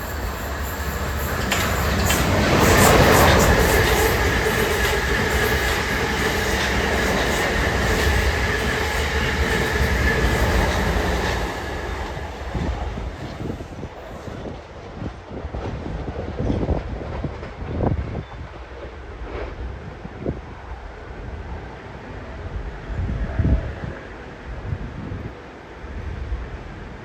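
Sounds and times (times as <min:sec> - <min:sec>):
electric train rumbling past: 0:00.0 - 0:27.0.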